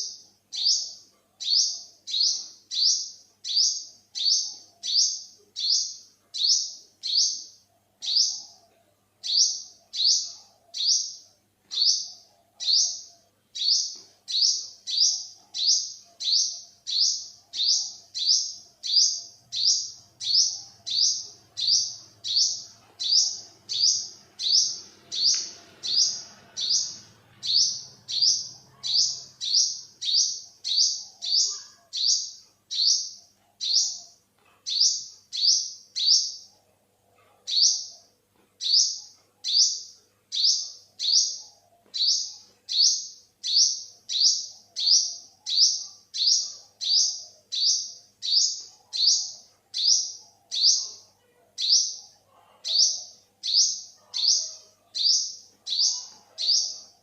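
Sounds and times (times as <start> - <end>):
sunbird chirping: 0.0 - 36.5, 51.6 - 57.0.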